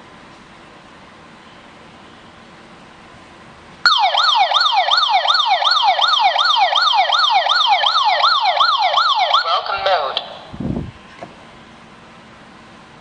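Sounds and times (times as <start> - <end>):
alarm siren wailing: 3.9 - 10.5.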